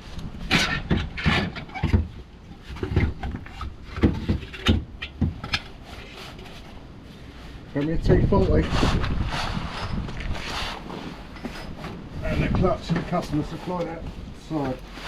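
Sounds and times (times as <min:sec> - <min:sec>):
metal tools knocking and scraping: 0:09.8 - 0:15.0.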